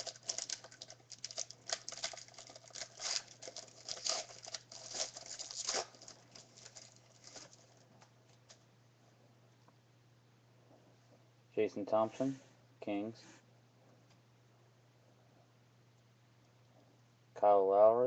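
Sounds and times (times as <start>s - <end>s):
cards and packaging rustling: 0.0s - 8.6s.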